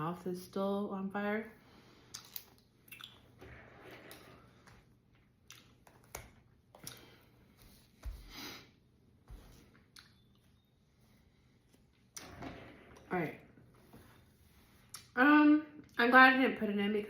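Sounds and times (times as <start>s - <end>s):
chewing and wet mouth clicks: 2.1s - 3.2s, 5.4s - 6.2s, 9.9s - 10.4s.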